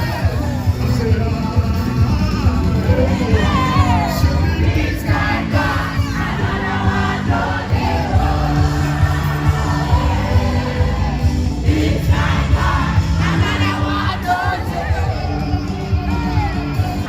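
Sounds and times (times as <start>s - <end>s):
person singing: 0.0s - 10.6s
crowd voices: 0.0s - 17.0s
pulsing bass beat: 0.0s - 17.0s.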